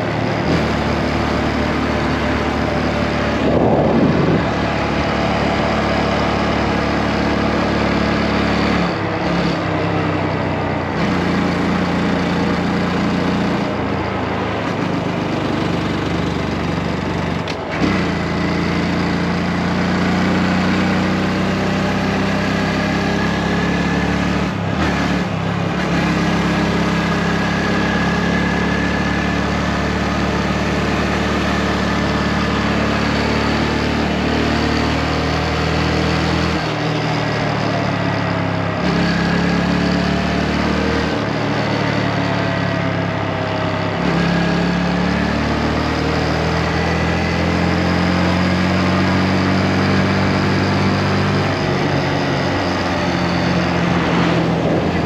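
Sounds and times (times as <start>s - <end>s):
motorcycle engine running: 0.0s - 55.0s
wind rushing: 3.3s - 5.2s, 53.6s - 55.0s.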